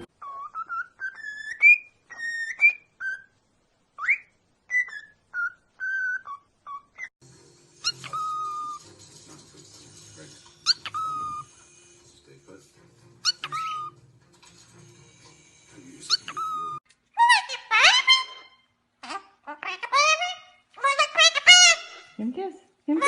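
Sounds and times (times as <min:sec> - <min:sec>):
parrot whistling: 0:00.0 - 0:03.3, 0:07.8 - 0:08.9, 0:10.6 - 0:12.0, 0:13.2 - 0:14.0, 0:16.0 - 0:18.6.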